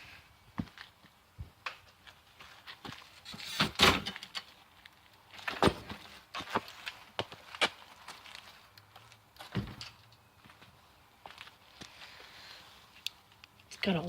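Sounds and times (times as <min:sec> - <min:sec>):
clattering rustle: 0:02.9 - 0:04.5, 0:05.4 - 0:06.2.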